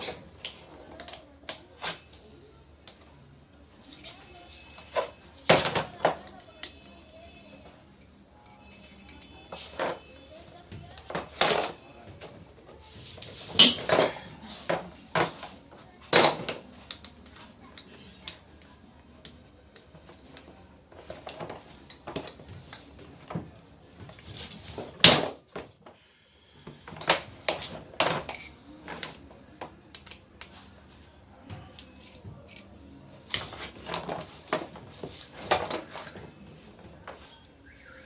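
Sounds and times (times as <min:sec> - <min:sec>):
metal tools clinking: 0:28.0 - 0:29.2.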